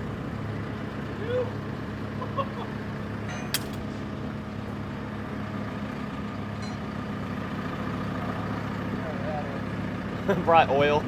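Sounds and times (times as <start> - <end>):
heavy engine idling: 0.0 - 11.0.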